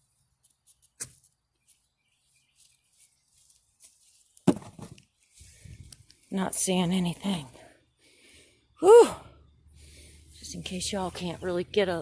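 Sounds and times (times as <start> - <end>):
shovel thudding into dirt: 4.4 - 5.0.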